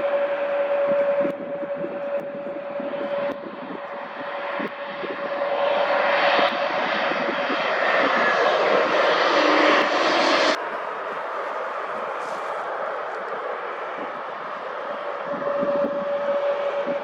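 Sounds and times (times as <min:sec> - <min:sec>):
jet airliner engines: 0:00.0 - 0:17.0.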